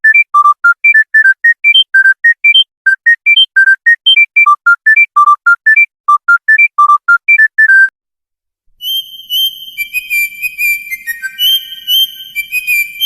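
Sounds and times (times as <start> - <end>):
beeping ringtone melody: 0.0 - 7.9
whistle-like ringtone: 0.0 - 7.9, 8.8 - 13.0.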